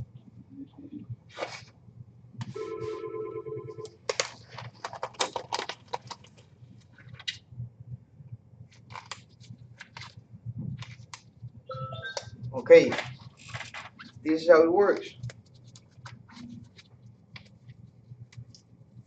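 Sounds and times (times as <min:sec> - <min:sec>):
disposable glove crinkling: 0:12.8 - 0:14.2.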